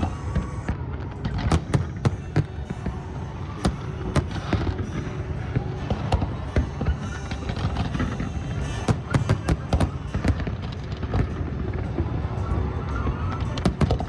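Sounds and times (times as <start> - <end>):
fireworks bangs: 0.0 - 14.0
song playing: 0.0 - 14.0.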